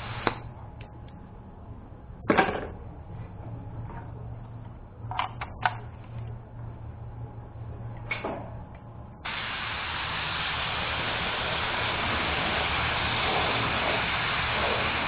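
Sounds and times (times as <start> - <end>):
low hum: 0.0 - 15.0
spray gun hissing: 9.3 - 15.0.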